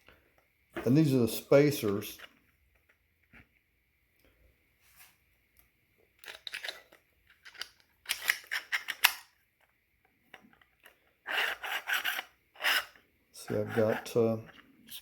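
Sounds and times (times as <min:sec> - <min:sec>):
plastic parts clacking and rattling: 0:06.2 - 0:09.7.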